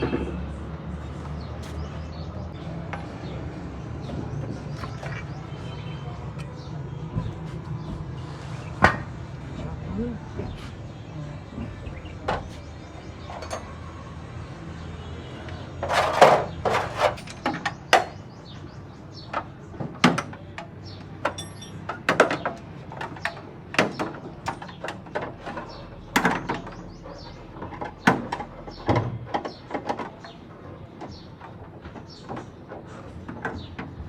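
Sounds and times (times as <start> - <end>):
sharp knocks and clatters: 4.0 - 9.4, 15.7 - 34.0.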